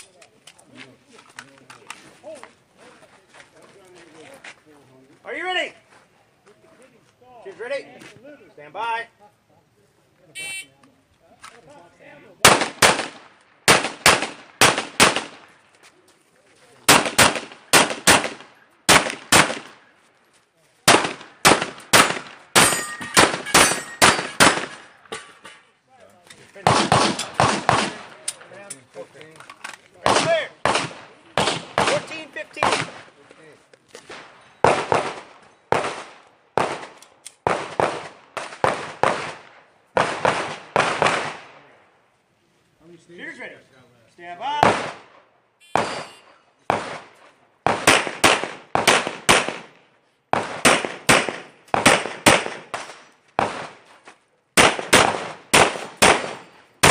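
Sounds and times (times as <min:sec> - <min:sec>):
pistol shots in quick pairs: 0:12.4 - 0:15.5, 0:16.8 - 0:19.9, 0:20.9 - 0:25.0, 0:26.6 - 0:28.2, 0:30.0 - 0:33.1, 0:34.1 - 0:41.6, 0:44.6 - 0:45.1, 0:45.7 - 0:53.8, 0:54.6 - 0:56.9.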